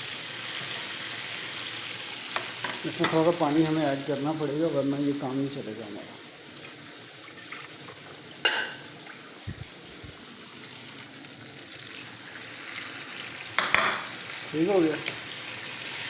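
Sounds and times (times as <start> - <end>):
low sizzle: 0.0 - 16.0
water added to a frying pan: 6.2 - 16.0
utensil clanking against pot: 8.4 - 8.9, 13.6 - 14.0.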